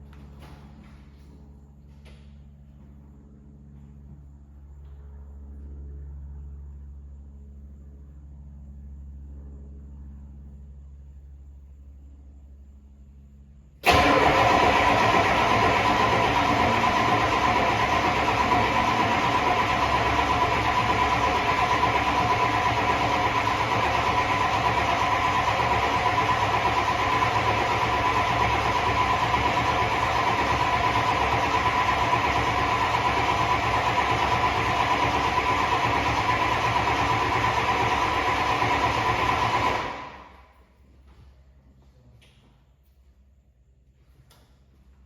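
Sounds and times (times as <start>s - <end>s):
diesel engine idling: 13.8s - 40.3s
turbo high whine: 13.8s - 40.4s.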